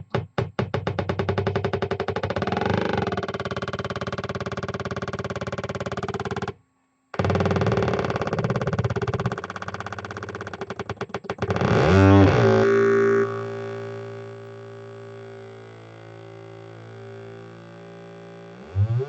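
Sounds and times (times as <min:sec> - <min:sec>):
oscillator buzzing with pitch sweeps: 0:11.5 - 0:19.0.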